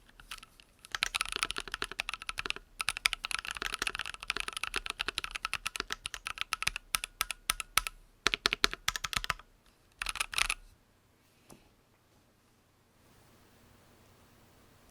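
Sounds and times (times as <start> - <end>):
typing on mechanical keyboard: 0.0 - 10.6.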